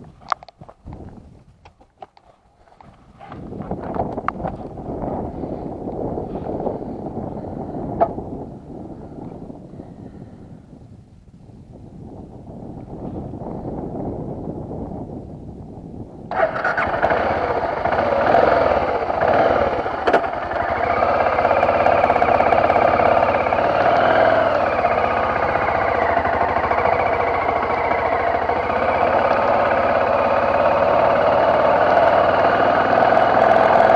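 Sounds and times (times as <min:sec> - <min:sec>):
motorcycle engine starting and revving: 0:16.3 - 0:33.9.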